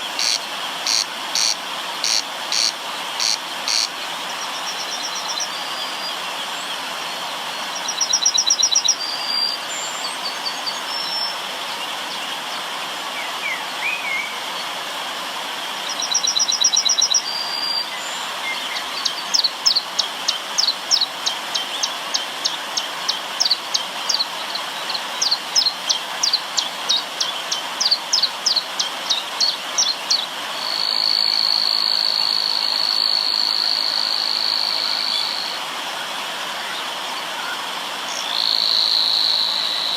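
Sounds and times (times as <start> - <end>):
bird trills and chirps: 0.0 - 3.9
high insect buzz: 0.0 - 3.9
river water running: 0.0 - 39.9.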